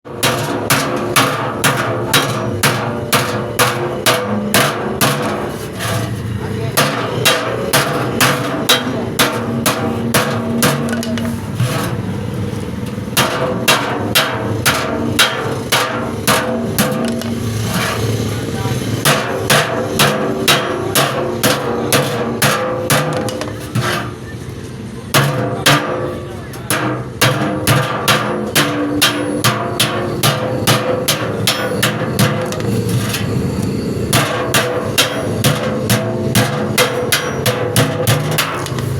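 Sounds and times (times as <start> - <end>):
hammer striking metal: 0.1 - 24.3, 25.1 - 38.9
hammer blows on metal: 25.1 - 38.9.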